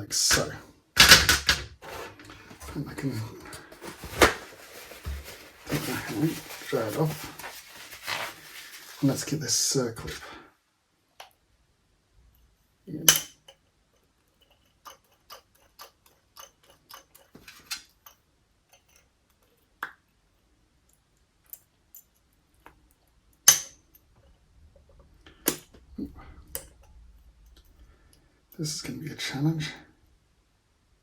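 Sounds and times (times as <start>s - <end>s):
small metal clicks and taps: 13.1s - 20.0s.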